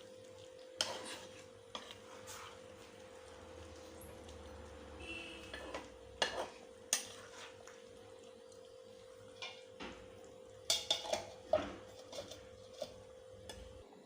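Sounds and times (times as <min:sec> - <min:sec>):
metal cookware clinking: 0:05.5 - 0:07.4, 0:10.6 - 0:13.8.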